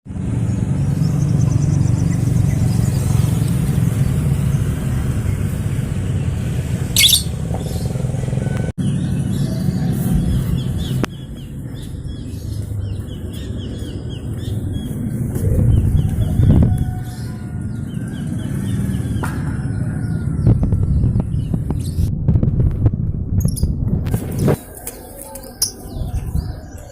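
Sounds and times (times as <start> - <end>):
small birds chirping: 0.4 - 8.2
loud shrill bird call: 7.0 - 7.4
steady low rumble: 9.2 - 17.0, 17.6 - 24.6.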